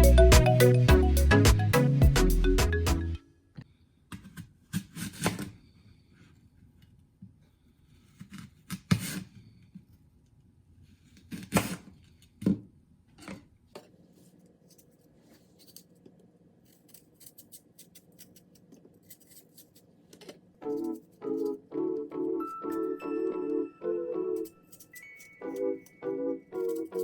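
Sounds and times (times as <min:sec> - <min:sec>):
rustling of household objects: 0:13.2 - 0:21.6, 0:24.4 - 0:25.6.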